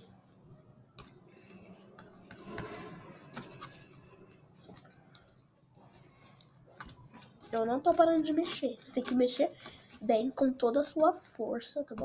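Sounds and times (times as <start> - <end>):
spoon scraping slime: 1.0 - 10.2.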